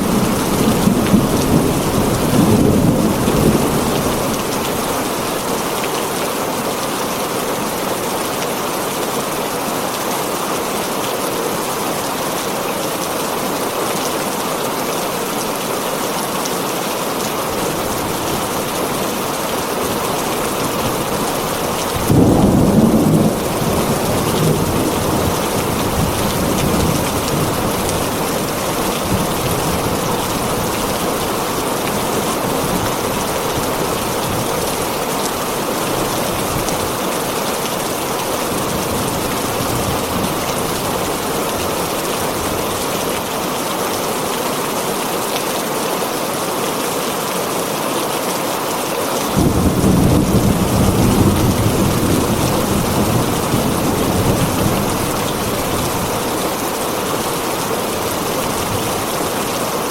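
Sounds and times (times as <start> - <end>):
thunder rumbling: 0.0 - 5.4, 20.4 - 34.9, 49.3 - 56.7
heavy rain on a tin roof: 0.0 - 59.9.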